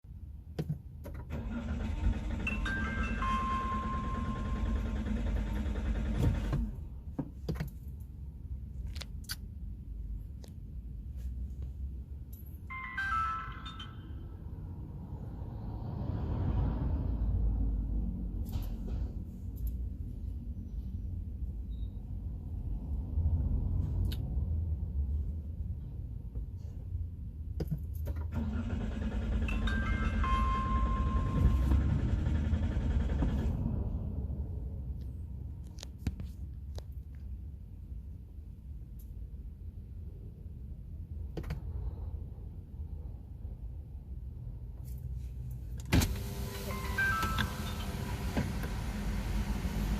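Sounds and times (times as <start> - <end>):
engine cranking: 1.1 - 6.8, 28.2 - 33.9
low vehicle rumble: 13.5 - 49.9.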